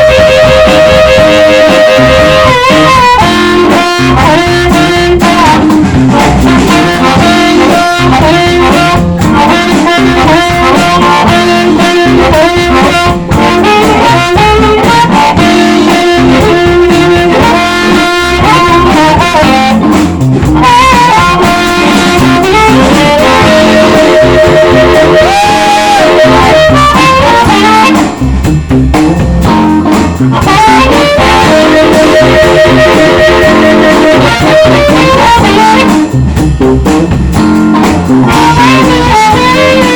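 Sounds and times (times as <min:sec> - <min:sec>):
live blues band playing: 0:00.0 - 0:39.9
harmonica: 0:20.7 - 0:28.2, 0:30.4 - 0:36.1.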